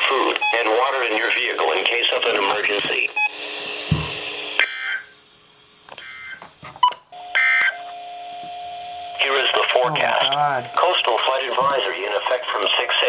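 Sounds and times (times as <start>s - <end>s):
radio static: 0.0s - 3.3s, 9.2s - 13.0s.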